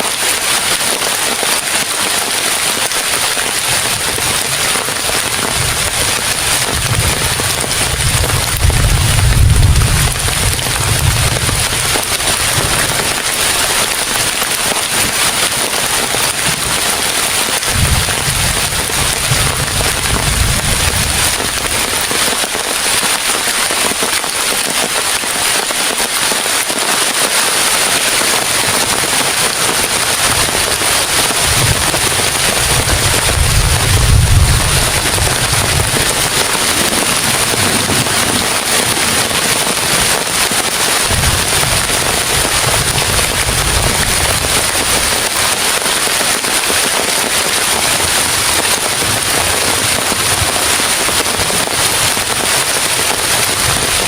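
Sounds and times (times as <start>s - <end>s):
heavy rain pouring: 0.0s - 54.0s
strong wind gusts: 3.8s - 14.4s, 17.6s - 22.1s, 30.2s - 45.2s.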